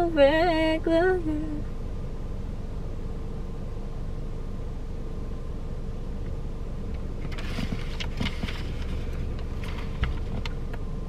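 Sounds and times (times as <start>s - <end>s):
low hum inside car: 0.0s - 11.0s
faint clicks and rustles: 6.2s - 10.8s.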